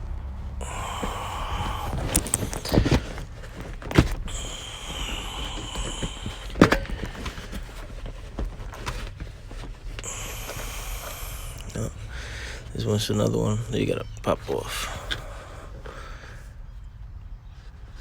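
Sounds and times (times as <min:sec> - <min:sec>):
hands rustling plastic trim and carpet: 0:00.6 - 0:12.8.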